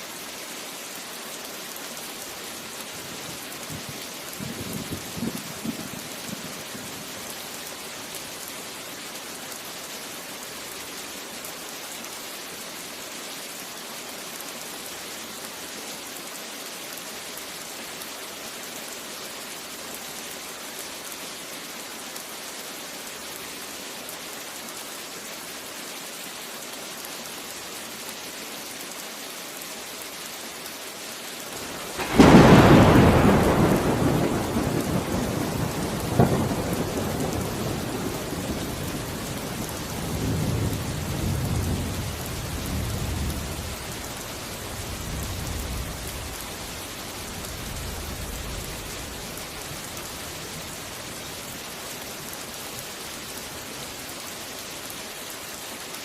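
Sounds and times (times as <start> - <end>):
steady rain falling: 0.0 - 56.0
loud thunderclap rumbling: 31.6 - 42.1.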